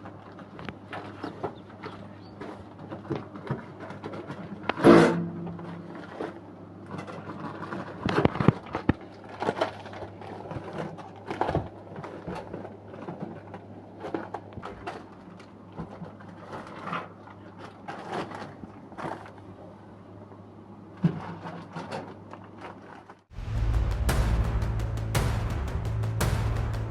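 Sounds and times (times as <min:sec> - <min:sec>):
low steady hum: 0:23.3 - 0:26.9.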